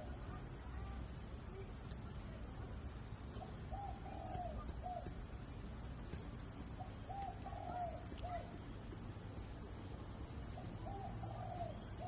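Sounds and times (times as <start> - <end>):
dove cooing: 0.0 - 0.5, 3.3 - 9.6, 10.2 - 12.0.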